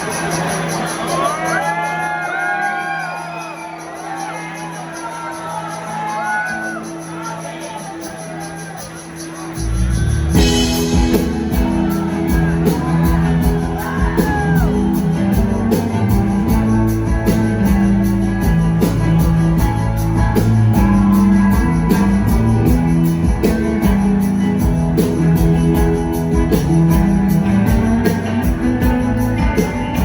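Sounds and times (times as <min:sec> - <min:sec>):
electric guitars and bass: 0:09.6 - 0:30.0
drum beat: 0:09.7 - 0:30.0.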